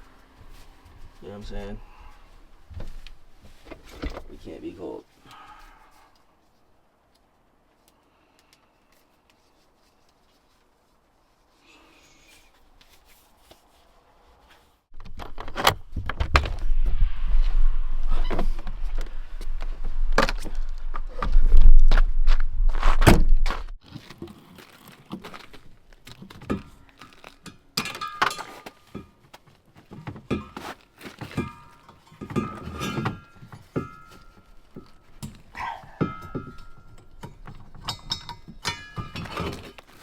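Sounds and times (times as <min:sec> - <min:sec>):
wind rumble on microphone: 0:15.0 - 0:23.8
clunks and knocks: 0:31.2 - 0:39.9.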